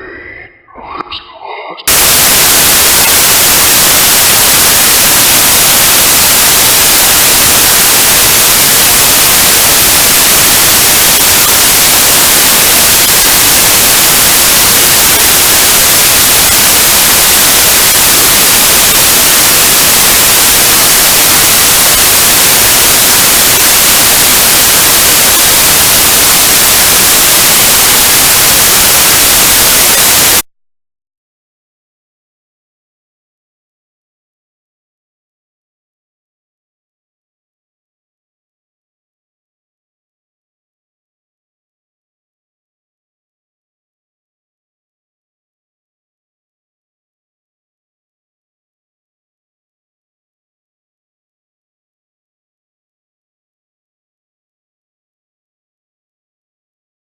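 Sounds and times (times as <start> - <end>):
loud static hiss: 0.0 - 30.5.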